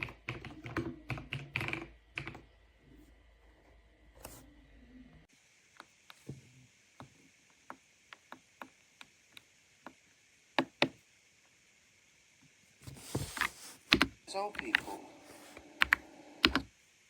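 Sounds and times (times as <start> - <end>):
mechanical keyboard keystrokes: 15.8 - 16.7.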